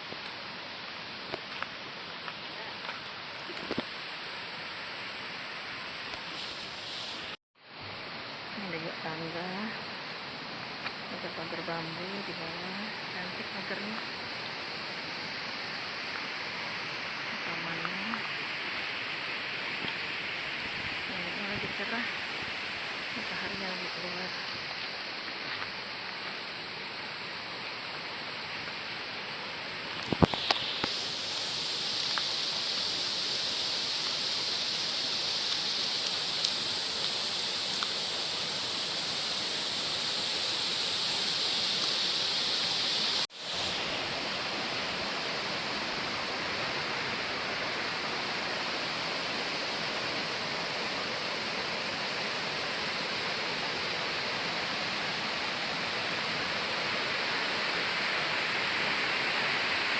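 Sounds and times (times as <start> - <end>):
waterfall rushing: 27.6 - 59.9.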